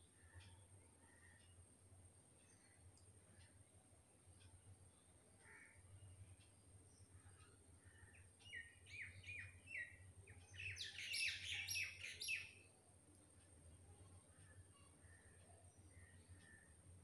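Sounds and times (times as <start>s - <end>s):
faint low hum: 0.0s - 17.0s
birds chirping: 4.9s - 12.7s.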